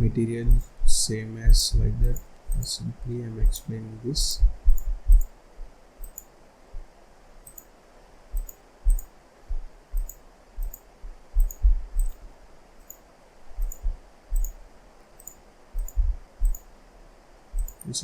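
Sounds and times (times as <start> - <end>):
faint room hiss: 0.0 - 18.0
computer mouse buttons clicking: 0.5 - 0.7, 2.0 - 2.7, 4.7 - 5.3, 6.0 - 6.3, 7.4 - 7.7, 8.4 - 9.1, 10.0 - 12.2, 13.6 - 14.6, 15.2 - 16.7, 17.6 - 17.9.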